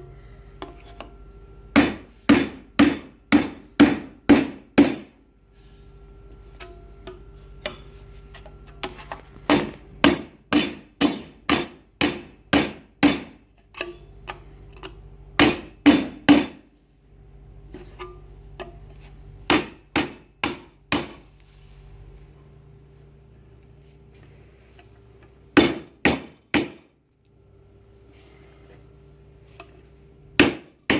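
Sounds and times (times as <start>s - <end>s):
low steady hum: 0.0s - 30.9s
hammer striking chisel: 1.8s - 5.1s, 9.5s - 13.9s, 15.4s - 16.6s, 19.5s - 21.2s, 25.6s - 26.8s, 30.4s - 30.9s.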